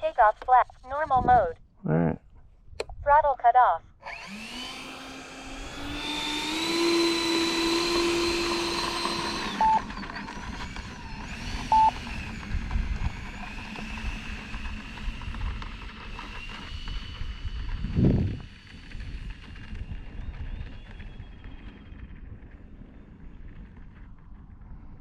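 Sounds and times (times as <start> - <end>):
model jet engines whining: 4.0 - 25.0
short high beeps: 9.6 - 9.8, 11.7 - 12.0
wind hitting microphone: 10.3 - 25.0.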